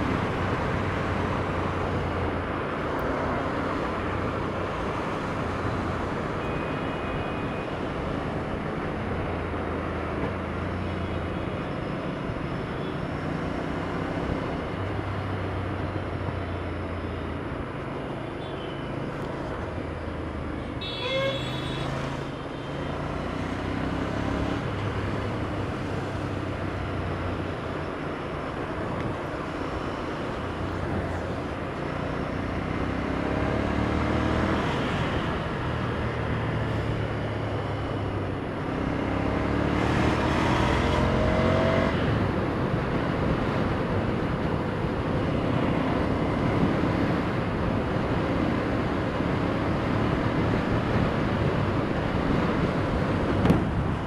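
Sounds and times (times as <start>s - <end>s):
road and wind noise: 0.0s - 54.0s.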